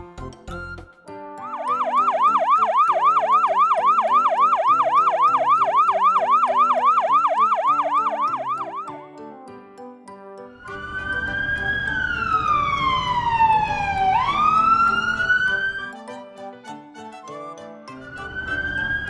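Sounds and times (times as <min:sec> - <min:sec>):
background music: 0:00.0 - 0:19.0
yelping siren: 0:01.4 - 0:08.9, 0:10.6 - 0:16.1, 0:18.0 - 0:19.0.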